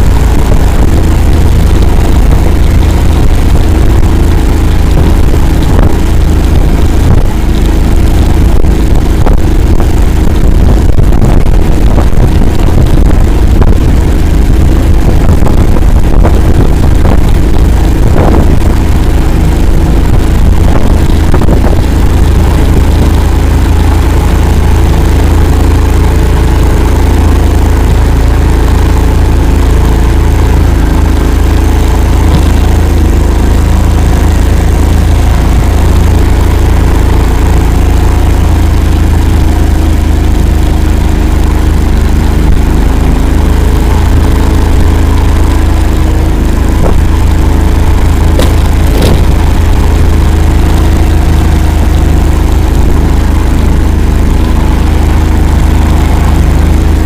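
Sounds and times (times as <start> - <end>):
vehicle engine droning: 0.0 - 57.0.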